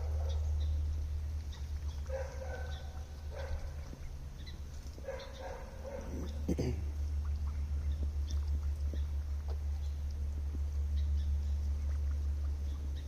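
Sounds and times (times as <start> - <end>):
steady low rumble: 0.0 - 13.0
ducks calling: 1.5 - 10.0.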